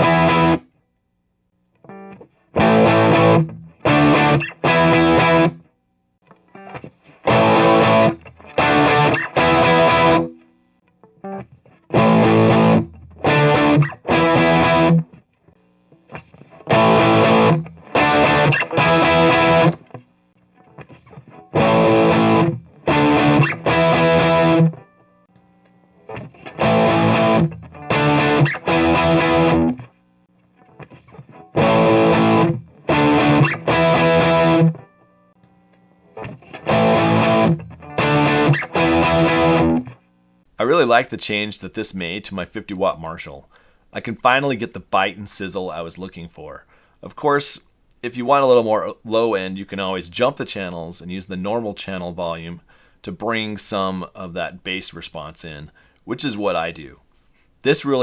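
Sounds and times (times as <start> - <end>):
overdriven electric guitar chords: 0.0 - 0.8, 1.7 - 40.4.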